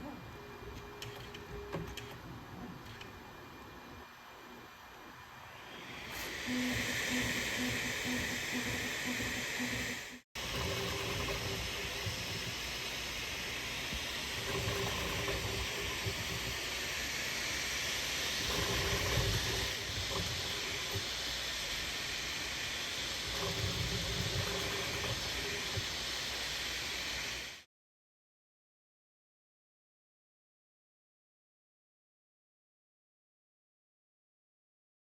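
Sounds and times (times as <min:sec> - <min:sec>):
printer fan hiss: 0:00.0 - 0:27.7
low motor tones: 0:05.7 - 0:16.7.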